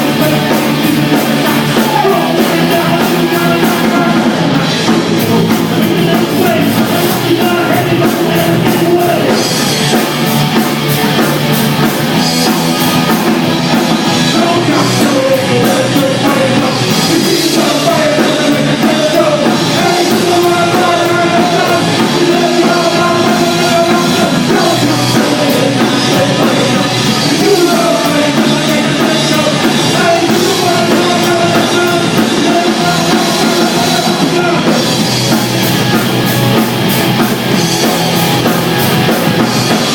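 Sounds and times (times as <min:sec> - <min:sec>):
person singing: 0:00.0 - 0:10.1, 0:14.1 - 0:35.0
drum kit: 0:00.0 - 0:39.9
loud rock music: 0:00.0 - 0:39.9.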